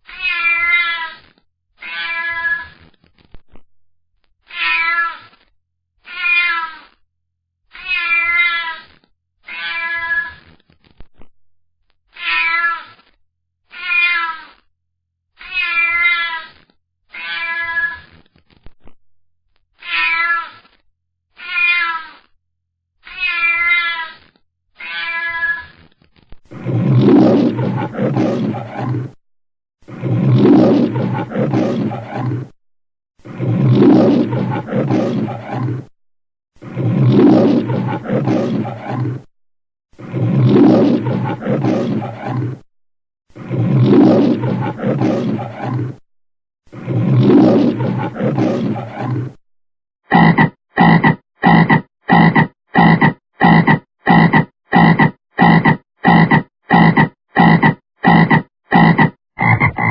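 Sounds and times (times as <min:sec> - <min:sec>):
cat meowing: 0:00.1 - 0:01.2, 0:01.8 - 0:02.8, 0:04.5 - 0:05.2, 0:06.0 - 0:06.9, 0:07.7 - 0:08.9, 0:09.5 - 0:10.4, 0:12.2 - 0:12.9, 0:13.7 - 0:14.5, 0:15.4 - 0:16.5, 0:17.1 - 0:18.1, 0:19.8 - 0:20.6, 0:21.4 - 0:22.2, 0:23.0 - 0:24.2, 0:24.8 - 0:25.8
lion roaring: 0:26.5 - 0:29.2, 0:29.8 - 0:32.6, 0:33.2 - 0:35.9, 0:36.6 - 0:39.3, 0:39.9 - 0:42.7, 0:43.3 - 0:46.0, 0:46.7 - 0:49.4, 0:50.1 - 0:59.9.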